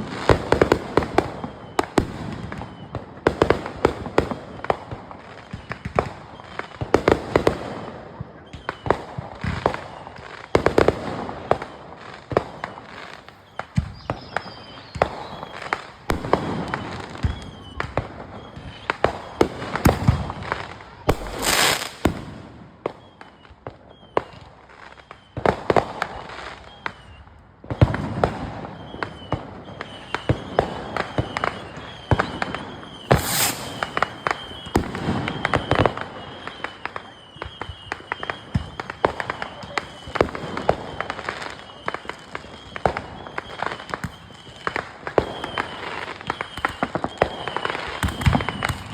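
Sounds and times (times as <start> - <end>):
fireworks bangs and crackles: 0.0 - 48.9
short high hisses: 33.1 - 34.1.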